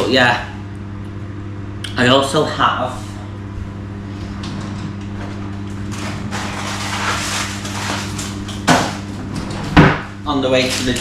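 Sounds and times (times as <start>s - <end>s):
microwave oven humming: 0.0s - 11.0s
rustling handling noise: 5.3s - 8.4s.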